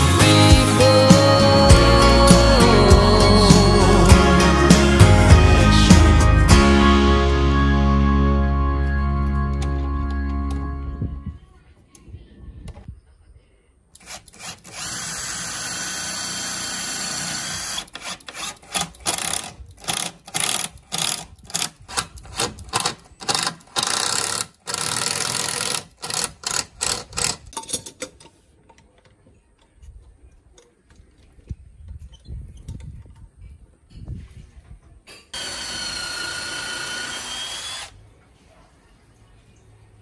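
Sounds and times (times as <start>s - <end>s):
power drill running: 14.0s - 21.2s, 35.4s - 38.0s.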